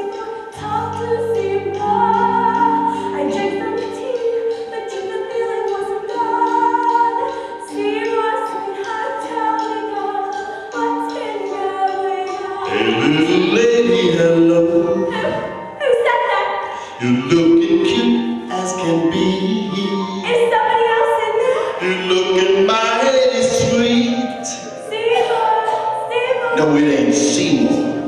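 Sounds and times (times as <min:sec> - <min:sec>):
voices singing over music: 0:00.0 - 0:28.0.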